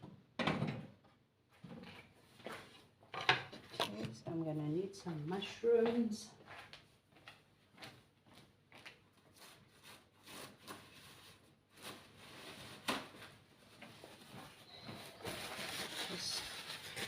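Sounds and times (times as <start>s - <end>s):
rubbing sound: 14.1s - 17.0s.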